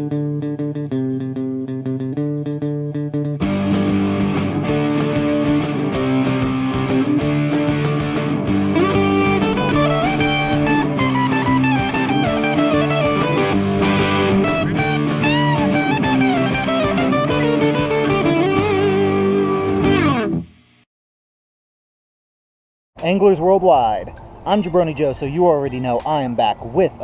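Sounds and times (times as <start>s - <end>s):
electric guitar instrumental music: 0.0s - 20.8s.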